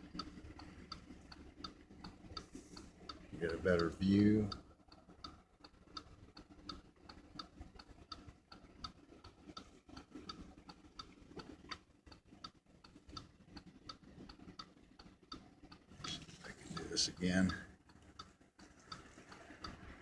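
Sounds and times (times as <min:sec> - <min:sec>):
faint even ticking: 0:00.0 - 0:20.0
low hum: 0:00.0 - 0:20.0.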